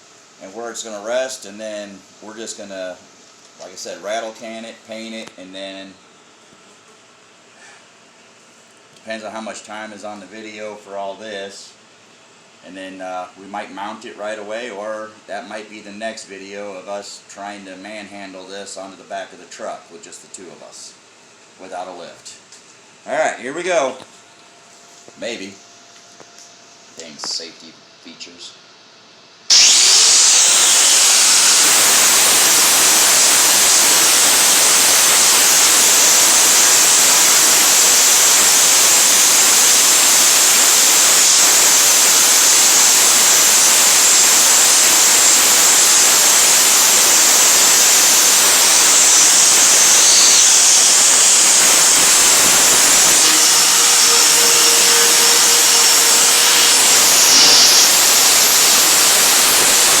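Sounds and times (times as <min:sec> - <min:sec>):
power grinder grinding metal: 0:29.5 - 1:00.0.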